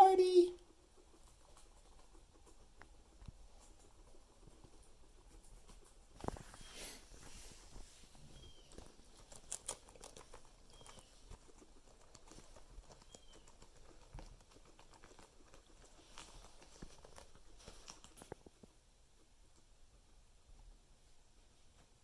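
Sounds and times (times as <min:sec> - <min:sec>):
guinea pig high chirps: 0:00.0 - 0:03.0, 0:08.2 - 0:17.0
guinea pigs rustling and eating: 0:00.0 - 0:22.0.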